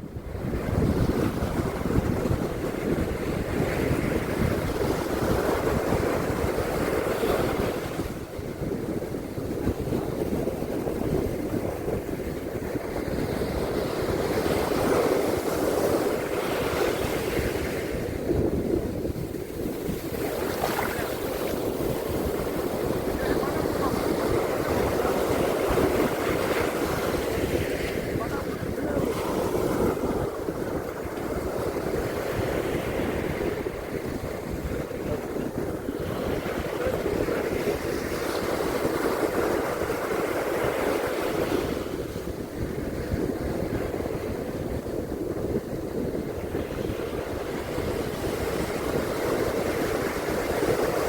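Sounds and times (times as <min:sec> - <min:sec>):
ocean surf washing onto beach: 0:00.0 - 0:51.0.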